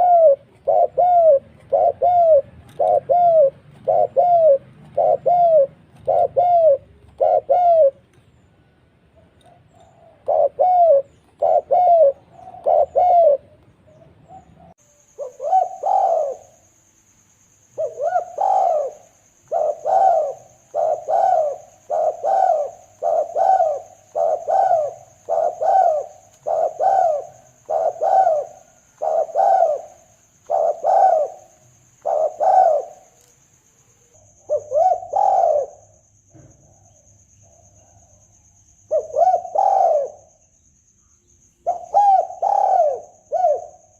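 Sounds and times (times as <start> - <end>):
dove cooing: 0.0 - 16.6, 17.8 - 33.3, 34.1 - 35.9, 38.9 - 40.4, 41.6 - 43.9.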